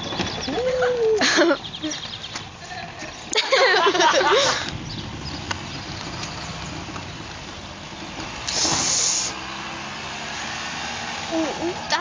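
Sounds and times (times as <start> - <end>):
bin wheels rolling on pavement: 0.0 - 12.0
short hiss: 8.4 - 9.4.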